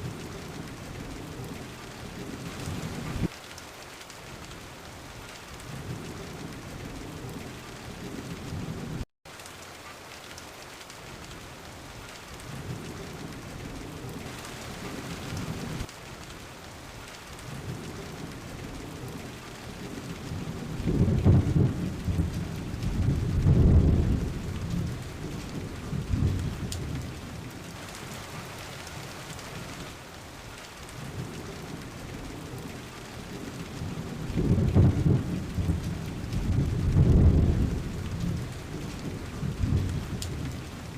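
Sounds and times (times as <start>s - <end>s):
rain hissing: 0.0s - 40.9s
thunder rumbling: 12.4s - 15.9s, 17.5s - 29.9s, 30.9s - 40.9s.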